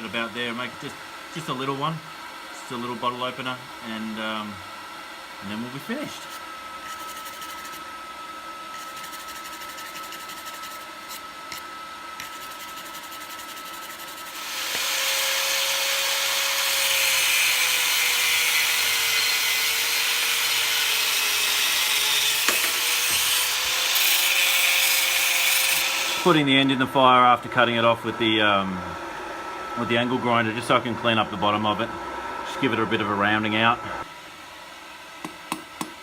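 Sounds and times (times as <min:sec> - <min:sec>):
angle grinder cutting steel: 0:08.8 - 0:26.4.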